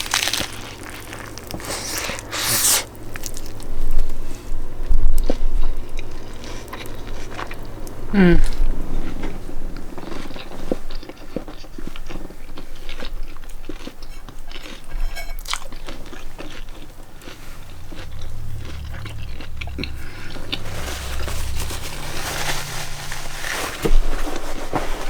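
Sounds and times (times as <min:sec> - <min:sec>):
lettuce crunching: 0:00.0 - 0:04.4, 0:10.0 - 0:25.0
wet mouth sounds: 0:01.1 - 0:03.4
low rumble: 0:16.8 - 0:24.7.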